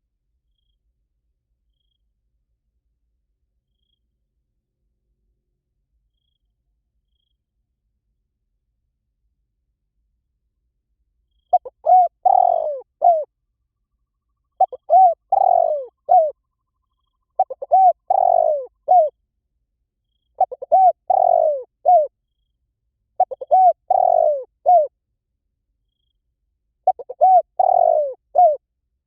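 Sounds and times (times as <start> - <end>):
dove cooing: 11.5 - 13.3, 14.6 - 16.4, 17.4 - 19.1, 20.4 - 22.1, 23.2 - 24.9, 26.9 - 28.6.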